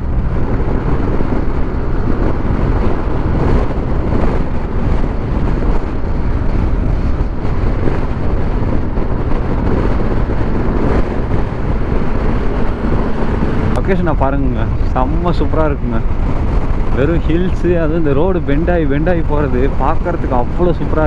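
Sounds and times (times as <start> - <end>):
motorbike engine: 0.0 - 15.2
wind rushing over microphone: 0.0 - 21.0.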